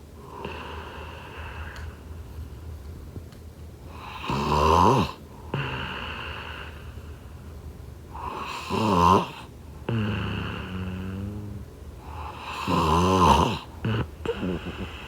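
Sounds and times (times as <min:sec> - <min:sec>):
person snoring: 0:08.2 - 0:15.0.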